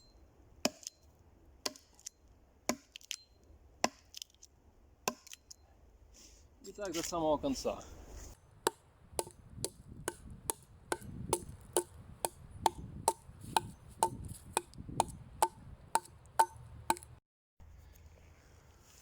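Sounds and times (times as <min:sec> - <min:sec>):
axe chopping log: 0:00.6 - 0:01.0, 0:02.7 - 0:03.0, 0:03.8 - 0:04.1, 0:05.1 - 0:05.4, 0:08.5 - 0:17.2.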